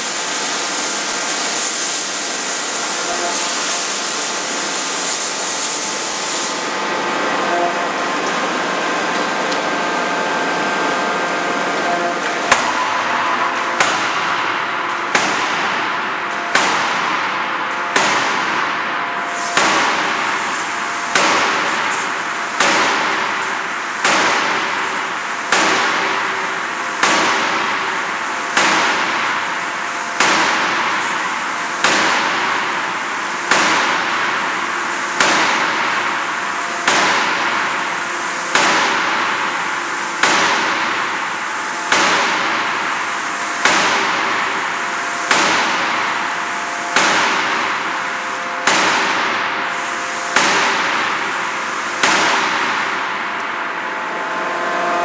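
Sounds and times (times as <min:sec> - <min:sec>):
machine hiss: 0:00.0 - 0:08.0, 0:12.0 - 0:55.0
forging hammer blows: 0:12.0 - 0:55.0.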